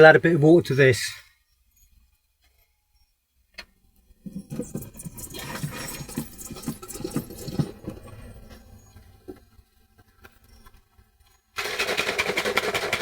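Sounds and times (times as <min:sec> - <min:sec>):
water pouring with gurgling glugs: 0:04.2 - 0:09.4.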